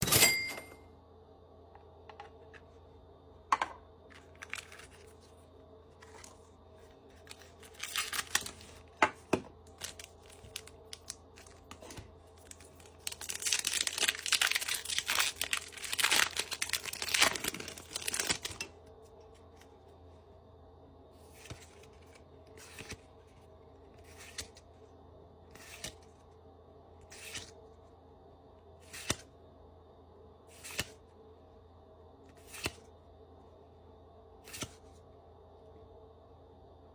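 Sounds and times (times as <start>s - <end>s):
foil wrapper tearing and crinkling: 7.2s - 8.8s, 9.7s - 11.8s, 12.4s - 18.7s.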